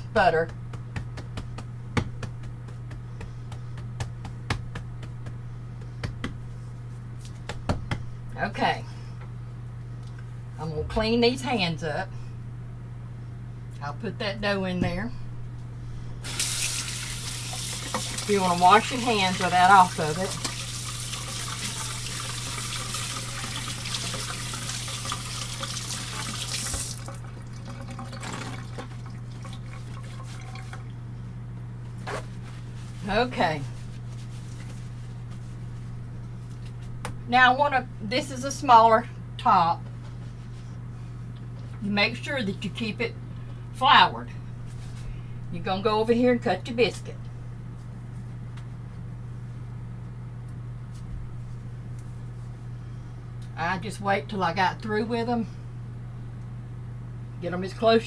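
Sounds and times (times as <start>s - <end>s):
low hum: 10.2s - 12.5s
tap running over washing hands: 16.2s - 30.9s.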